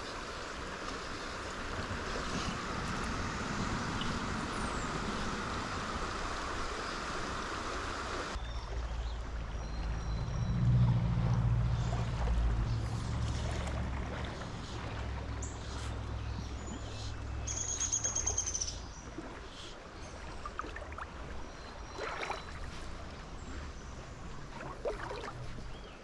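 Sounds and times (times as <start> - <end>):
low rumble: 8.8 - 17.5.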